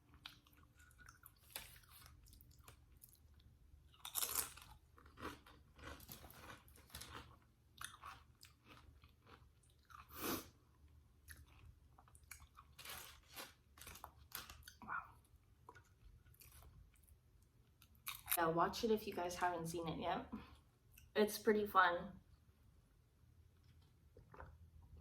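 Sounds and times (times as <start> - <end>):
chips being chewed: 0.1 - 10.2, 11.1 - 14.9, 17.8 - 18.4.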